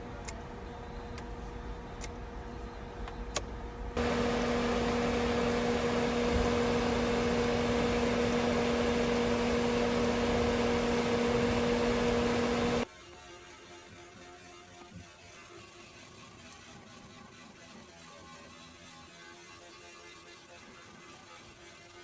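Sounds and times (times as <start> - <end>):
machine humming and hissing: 4.0 - 12.9.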